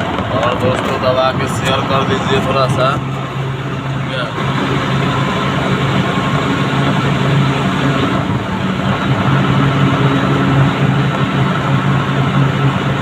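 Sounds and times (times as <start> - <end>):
road noise: 0.0 - 13.0
truck engine droning: 0.0 - 13.0.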